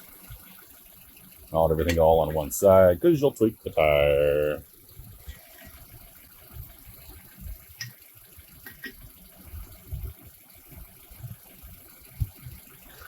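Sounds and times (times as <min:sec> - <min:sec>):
dull low handling bumps: 0:01.6 - 0:02.9.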